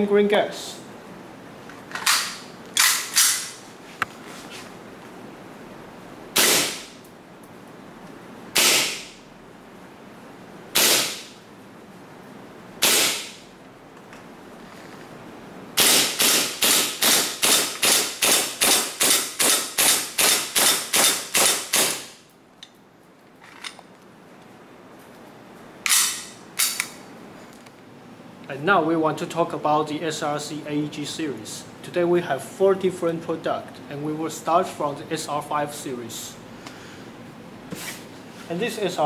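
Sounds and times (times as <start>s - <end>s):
airsoft pistol firing: 6.4s - 6.9s, 8.6s - 9.1s, 10.8s - 11.3s, 12.8s - 13.4s, 15.8s - 22.2s.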